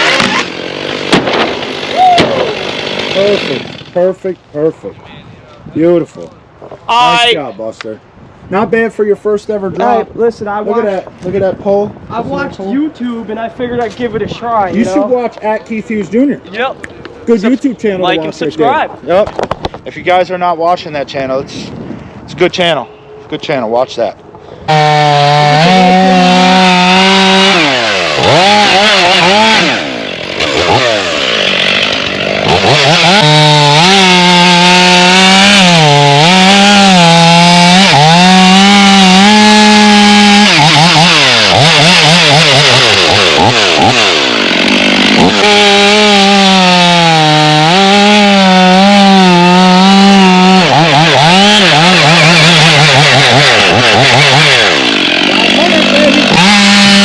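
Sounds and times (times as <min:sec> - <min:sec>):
chainsaw cutting wood: 0:00.0 - 0:04.1, 0:24.7 - 0:57.0.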